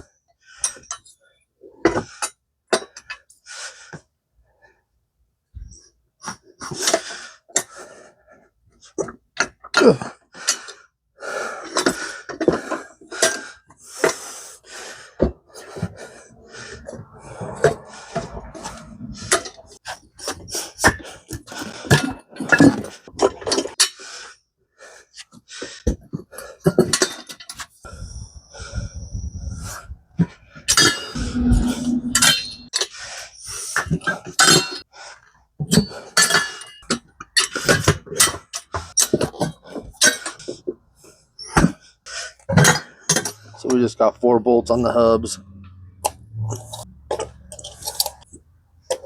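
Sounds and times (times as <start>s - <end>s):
metal clanks and scrapes: 30.7s - 32.7s, 46.0s - 49.0s.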